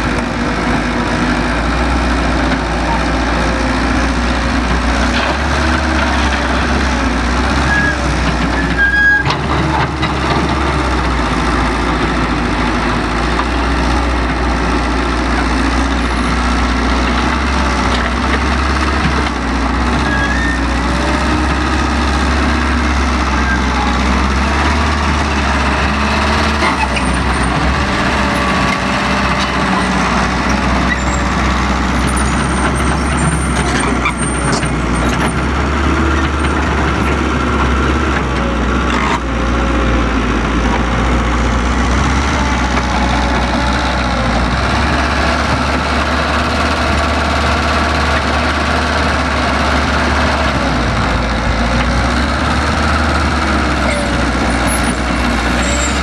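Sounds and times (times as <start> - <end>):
diesel engine running: 0.0 - 56.0.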